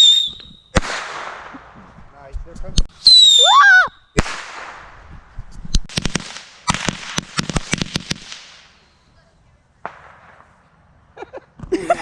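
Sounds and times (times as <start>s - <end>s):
firework cracks: 0.0s - 1.8s, 4.2s - 5.1s, 5.8s - 8.9s, 9.8s - 10.7s.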